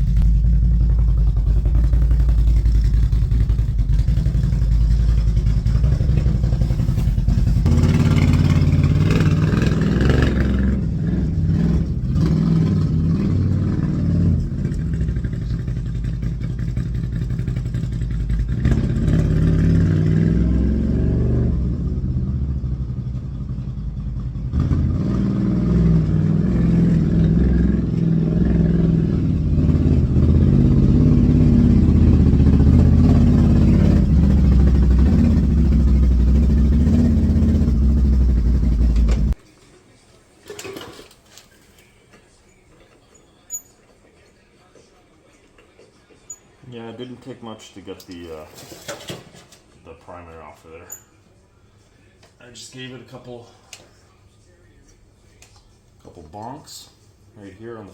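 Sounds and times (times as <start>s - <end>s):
engine running steadily: 0.0s - 13.2s, 27.2s - 39.4s.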